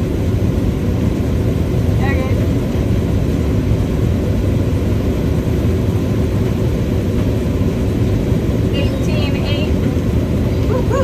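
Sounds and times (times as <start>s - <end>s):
combine harvester rumbling: 5.9s - 11.0s.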